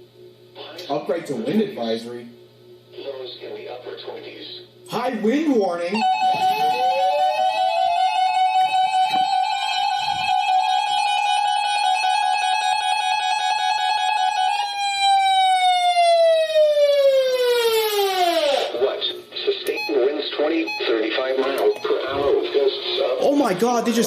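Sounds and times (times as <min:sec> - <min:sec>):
warning alarm tone: 0:06.0 - 0:18.7, 0:19.7 - 0:22.4.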